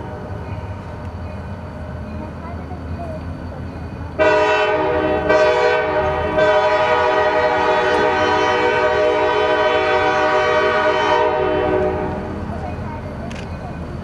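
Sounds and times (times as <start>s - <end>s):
locomotive air horn blasts: 4.2s - 12.3s.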